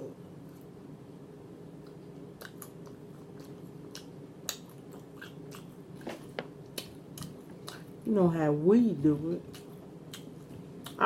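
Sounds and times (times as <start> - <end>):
steady low hum: 0.0 - 11.0
chewing food: 1.8 - 8.1, 9.4 - 11.0.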